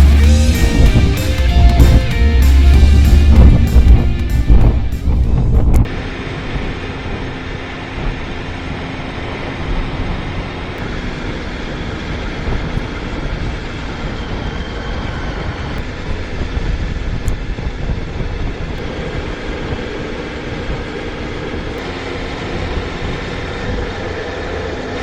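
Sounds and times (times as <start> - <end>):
motorcycle engine drone: 0.0 - 25.0
wind and road noise: 0.0 - 25.0.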